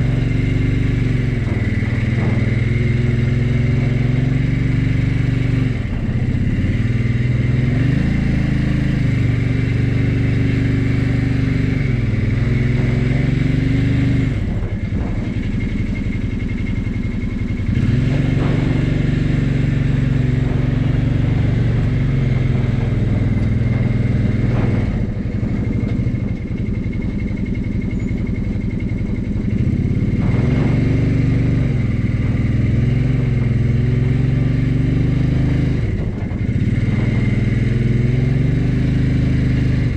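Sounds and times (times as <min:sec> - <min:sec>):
vehicle engine revving under load: 0:00.0 - 0:39.9.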